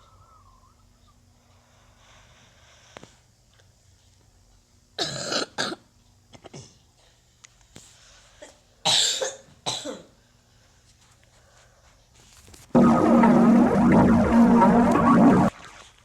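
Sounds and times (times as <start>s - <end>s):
person coughing: 8.4s - 10.1s.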